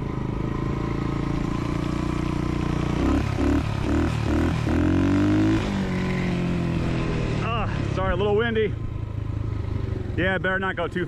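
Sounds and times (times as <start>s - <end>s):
dirt bike engine revving: 0.0s - 8.6s.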